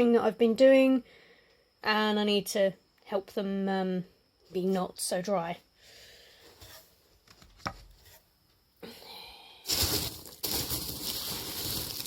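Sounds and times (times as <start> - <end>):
packaging rustling and crinkling: 9.7 - 12.0.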